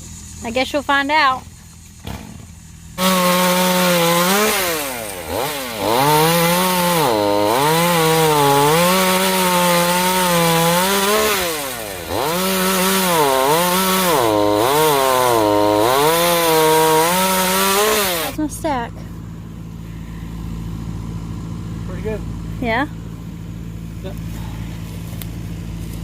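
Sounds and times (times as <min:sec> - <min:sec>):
chainsaw cutting wood: 0:02.0 - 0:18.5.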